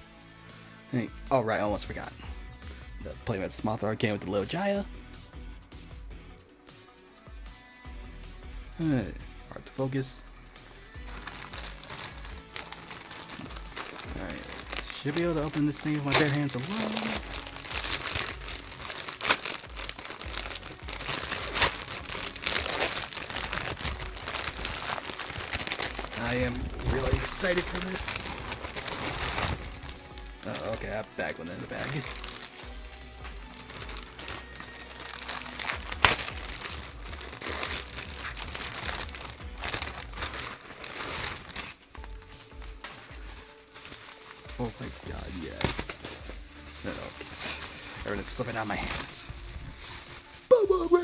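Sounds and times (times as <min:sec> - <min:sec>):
package ripping: 0:11.0 - 0:50.9
packaging crinkling: 0:11.0 - 0:51.0
sharp loud plastic crackle: 0:11.1 - 0:50.5.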